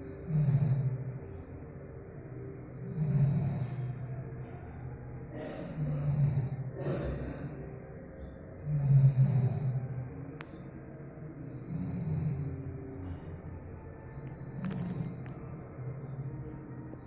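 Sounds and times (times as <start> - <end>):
low rattling snores: 0.2 - 1.0, 2.8 - 3.8, 5.6 - 6.7, 8.6 - 9.9, 11.6 - 12.5, 14.4 - 15.2.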